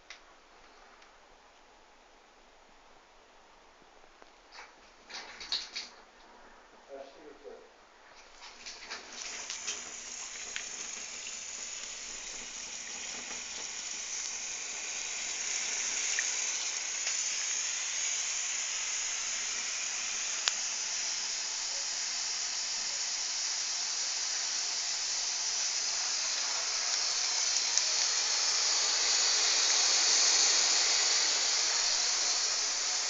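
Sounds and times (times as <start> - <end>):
hissing rush through pipes: 8.8 - 33.0.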